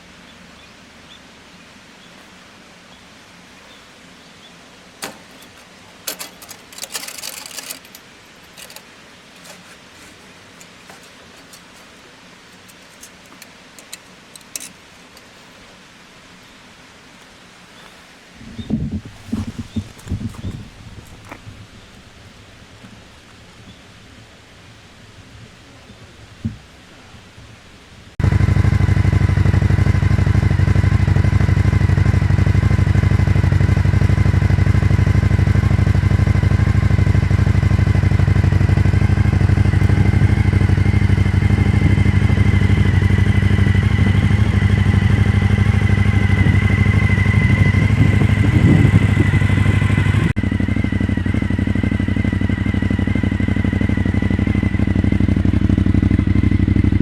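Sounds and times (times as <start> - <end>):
motorcycle engine idling: 18.4 - 57.0.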